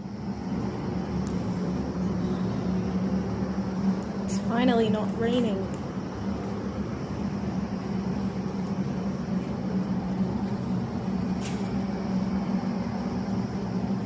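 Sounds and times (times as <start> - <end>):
low motor hum: 0.0 - 14.0
rushing noise: 0.0 - 14.0.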